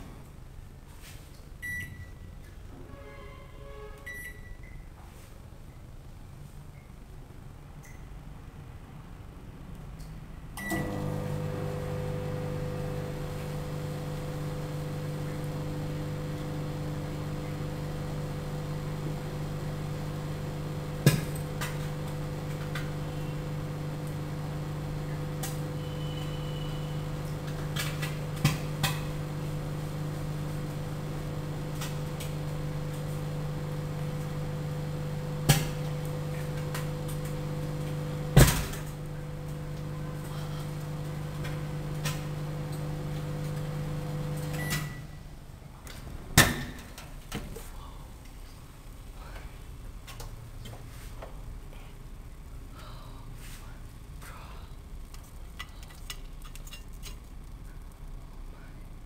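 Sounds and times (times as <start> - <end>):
microwave oven humming: 10.6 - 45.3.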